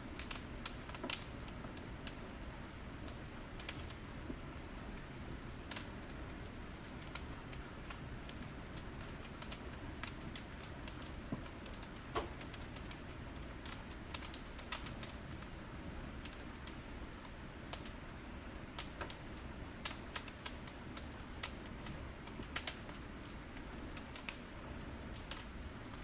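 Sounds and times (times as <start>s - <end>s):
firewood crackling and popping: 0.0s - 26.0s
low rush of flame: 0.0s - 26.0s.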